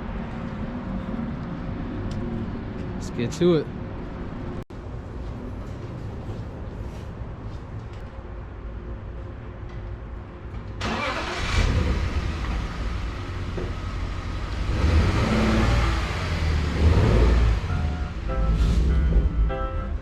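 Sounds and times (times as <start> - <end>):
car engine revving: 10.8 - 19.3.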